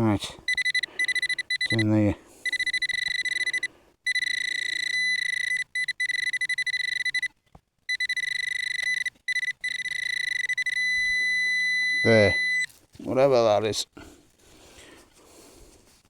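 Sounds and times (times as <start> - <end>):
pinpointer probe beeping: 0.5 - 12.7.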